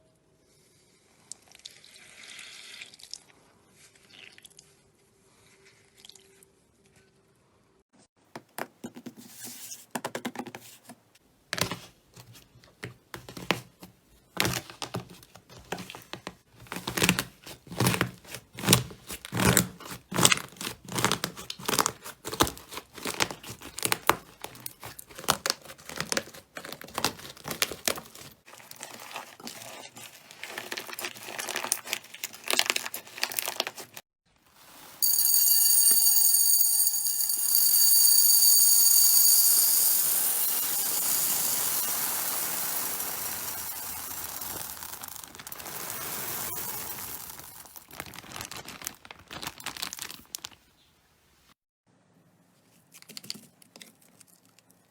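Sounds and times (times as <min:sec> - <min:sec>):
loud steady hiss with ringing: 0:37.8 - 0:44.2
slime crackling and popping: 0:43.7 - 0:50.6.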